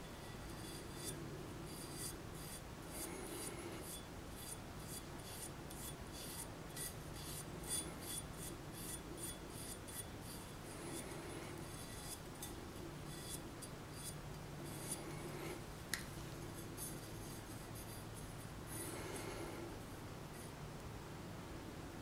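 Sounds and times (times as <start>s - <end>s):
copper pipe being scraped: 0.0s - 19.6s.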